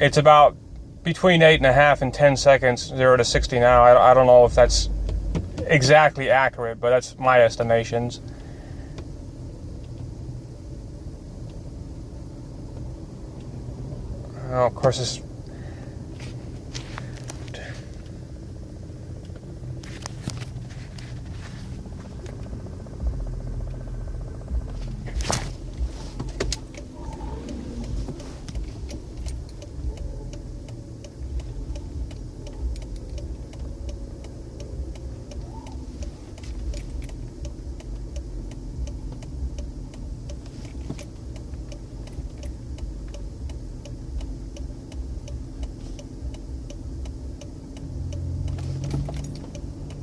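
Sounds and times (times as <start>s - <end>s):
car engine rumble: 0.0s - 50.0s
engine ticking: 0.0s - 50.0s.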